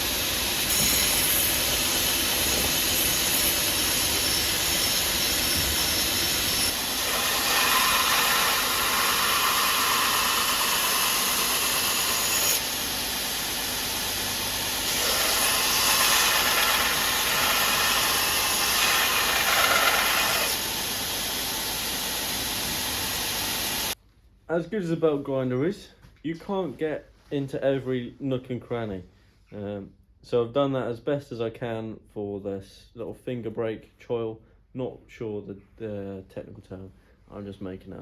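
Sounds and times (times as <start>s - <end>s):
belt grinder running: 0.5s - 24.0s
blade grinding on belt: 6.3s - 12.6s, 14.8s - 20.7s.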